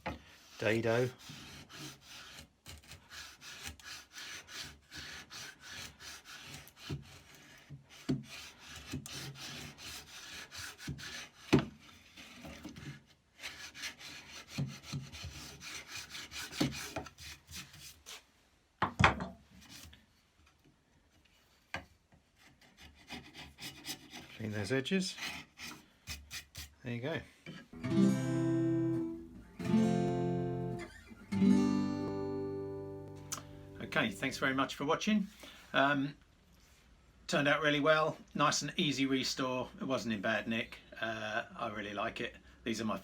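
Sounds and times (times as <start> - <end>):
hand tool scraping wood: 0.0 - 18.2, 22.3 - 26.8.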